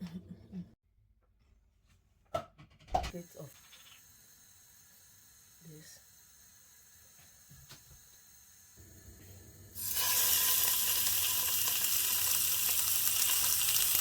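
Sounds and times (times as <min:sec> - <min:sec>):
steak sizzling in a pan: 0:04.0 - 0:14.0.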